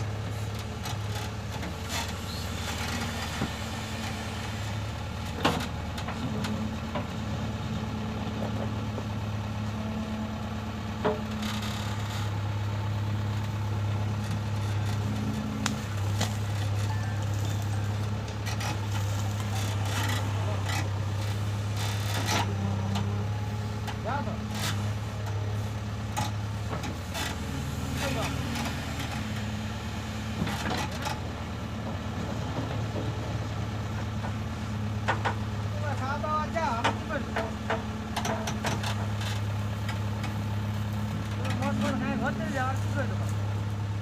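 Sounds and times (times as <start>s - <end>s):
diesel engine running: 0.0s - 44.0s.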